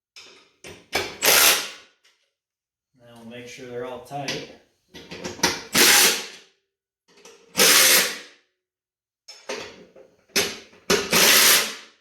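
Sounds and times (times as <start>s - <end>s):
power tool driving bolts: 0.9s - 1.8s, 5.4s - 6.4s, 7.6s - 8.2s, 10.4s - 11.8s.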